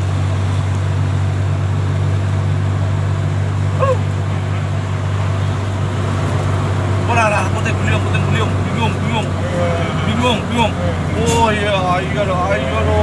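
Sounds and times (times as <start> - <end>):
heavy rain and wind: 0.0 - 13.0
low hum: 0.0 - 13.0
high yelp-like call: 3.7 - 4.7.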